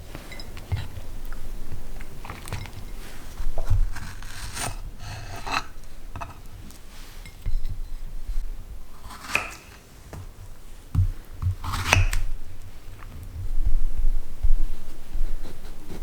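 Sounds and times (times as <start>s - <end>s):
knife cutting and scraping: 2.3s - 6.5s, 9.0s - 9.9s, 11.4s - 12.4s.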